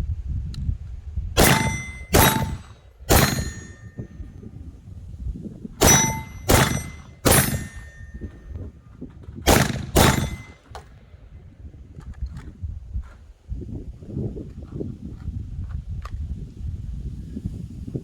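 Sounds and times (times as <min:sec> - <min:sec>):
pistol shots hitting steel targets: 0:01.4 - 0:04.1, 0:05.8 - 0:08.4, 0:09.4 - 0:11.0.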